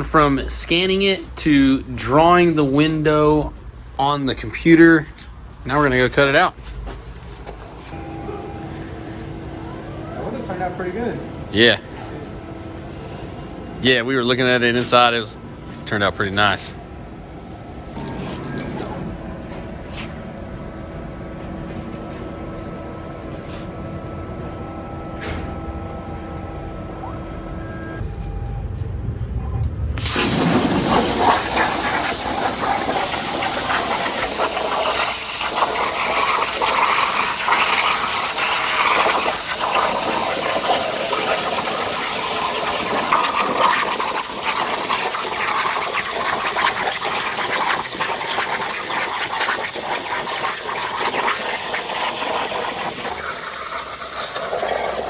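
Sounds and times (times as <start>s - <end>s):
low machine hum: 0.0s - 55.0s
plasma cutter hissing: 30.0s - 55.0s.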